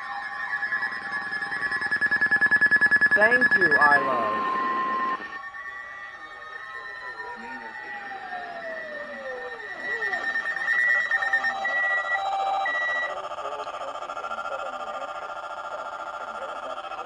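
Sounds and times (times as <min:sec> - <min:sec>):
falling alert tone: 0:00.0 - 0:05.8
two-tone electronic alarm: 0:00.0 - 0:17.0
short high beeps: 0:00.8 - 0:05.4.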